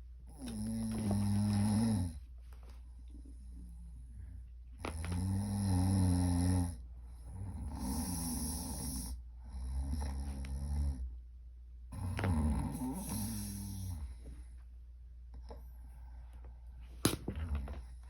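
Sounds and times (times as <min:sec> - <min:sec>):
loud snoring: 0:00.3 - 0:02.2, 0:04.9 - 0:11.1, 0:11.9 - 0:14.1.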